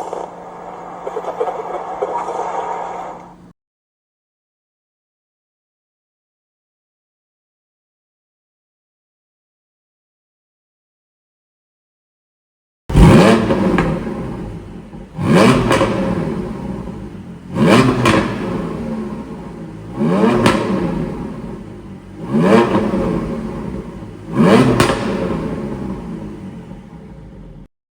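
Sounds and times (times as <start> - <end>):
car engine revving: 0.0 - 3.5, 12.9 - 27.7
exhaust pops and crackles: 0.0 - 3.5, 12.9 - 26.8.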